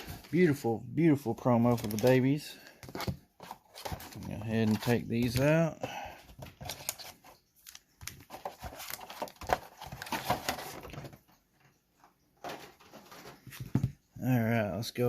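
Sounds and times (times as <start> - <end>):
packaging rustling and crinkling: 1.4 - 11.4, 12.4 - 14.0.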